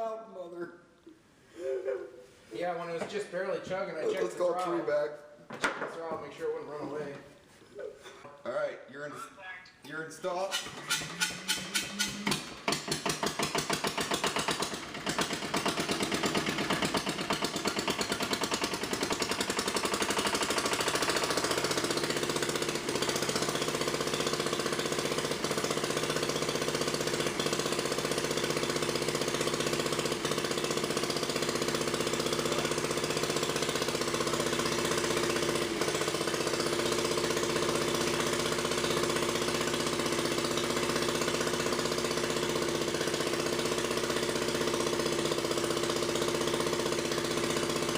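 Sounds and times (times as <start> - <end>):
diesel generator running: 10.5 - 47.9.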